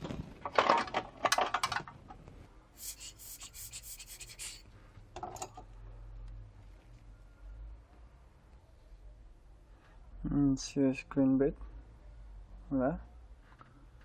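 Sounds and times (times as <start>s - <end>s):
fast fine scratching: 2.8s - 4.6s.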